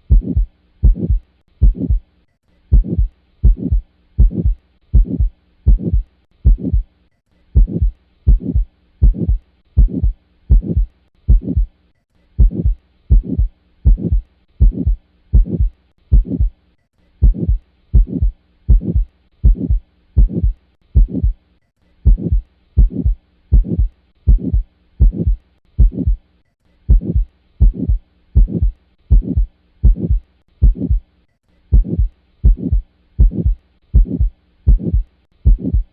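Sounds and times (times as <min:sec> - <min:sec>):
heartbeat with murmur: 0:00.0 - 0:02.0, 0:02.7 - 0:06.9, 0:07.6 - 0:11.7, 0:12.4 - 0:16.6, 0:17.2 - 0:21.4, 0:22.0 - 0:26.2, 0:26.9 - 0:31.1, 0:31.7 - 0:35.9
faint steady hum: 0:00.0 - 0:35.9.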